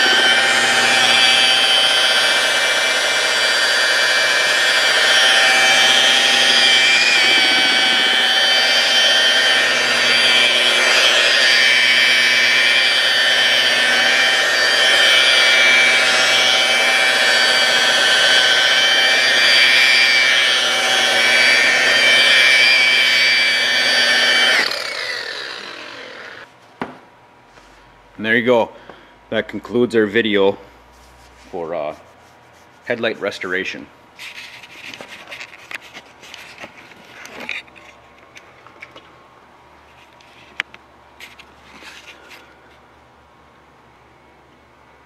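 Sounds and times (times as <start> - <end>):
rotary buffer whining: 0.0 - 26.5.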